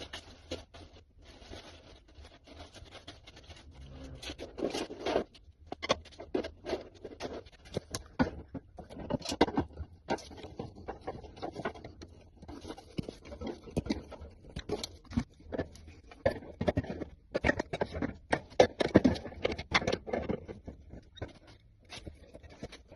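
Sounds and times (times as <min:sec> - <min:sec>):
scraping of hand work: 0:00.0 - 0:22.9.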